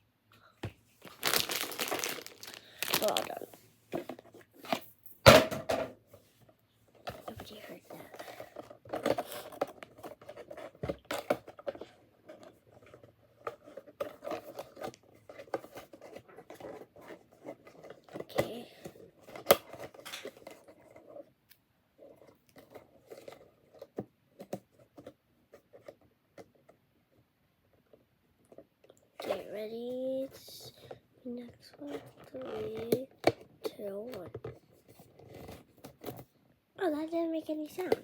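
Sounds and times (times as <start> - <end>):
packaging being torn and scraped: 1.0 - 3.5.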